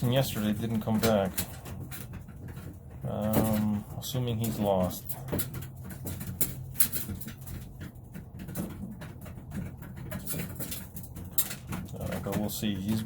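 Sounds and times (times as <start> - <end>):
pigeons pecking at feed: 0.0 - 13.0.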